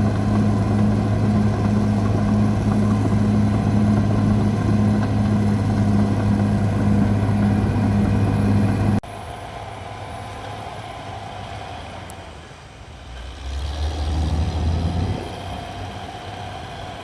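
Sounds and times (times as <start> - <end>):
bulldozer diesel engine running: 0.0 - 9.0.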